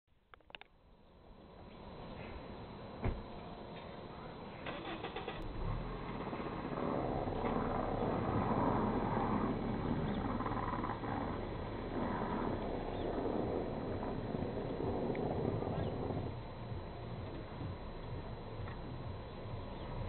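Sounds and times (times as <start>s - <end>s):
wind buffeting microphone: 6.0s - 20.0s.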